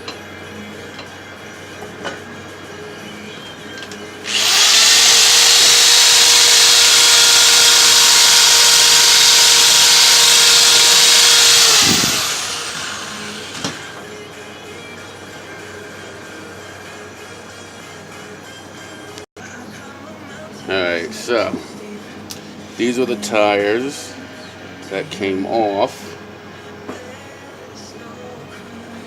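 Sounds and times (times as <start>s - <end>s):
power tool motor whining: 4.2s - 14.0s.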